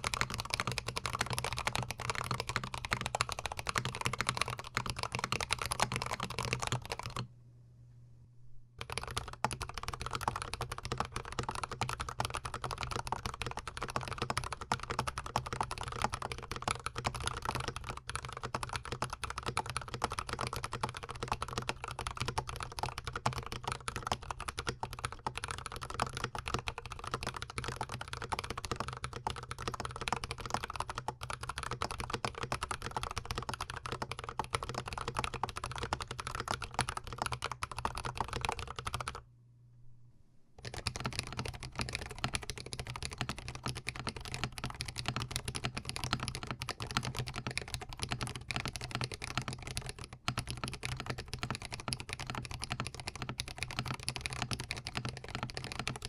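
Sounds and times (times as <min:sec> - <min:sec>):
fast typing on mechanical keyboard: 0:00.0 - 0:07.2, 0:08.8 - 0:39.2, 0:40.6 - 0:56.0.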